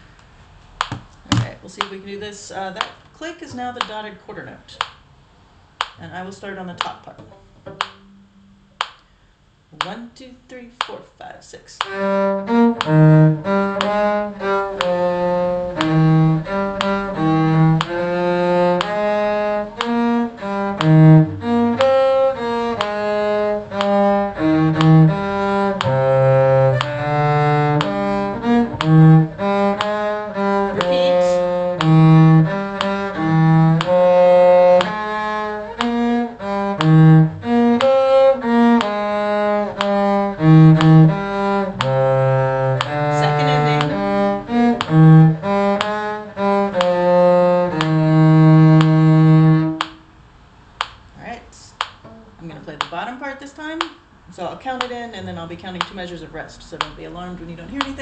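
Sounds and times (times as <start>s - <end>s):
bowed strings playing: 6.4s - 8.9s, 11.8s - 50.1s
metronome clicks: 6.8s - 9.1s, 11.8s - 35.0s, 35.8s - 36.1s, 36.7s - 39.1s, 39.8s - 40.0s, 40.7s - 47.1s, 47.7s - 49.1s, 49.8s - 50.0s.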